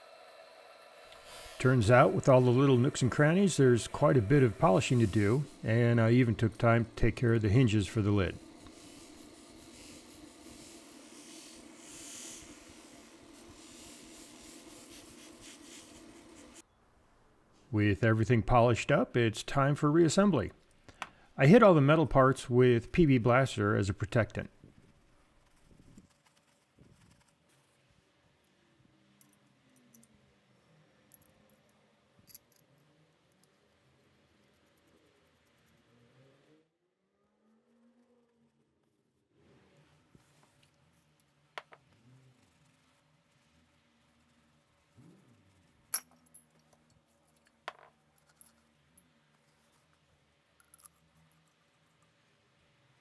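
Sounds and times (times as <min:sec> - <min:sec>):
metal rubbing: 0:01.2 - 0:16.6.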